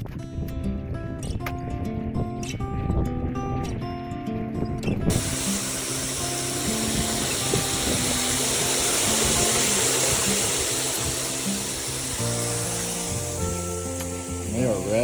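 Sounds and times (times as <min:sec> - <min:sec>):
water running into a container: 0:05.1 - 0:15.0.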